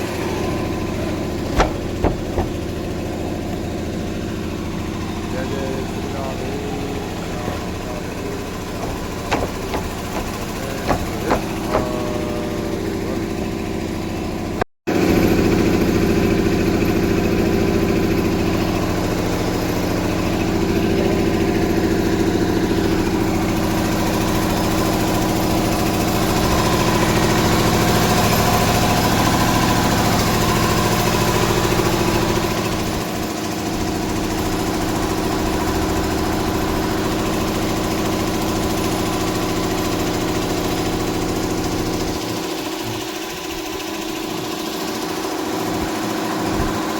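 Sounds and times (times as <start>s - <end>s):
engine running: 0.0s - 46.9s
sharp knocks: 1.5s - 3.0s, 8.4s - 12.3s.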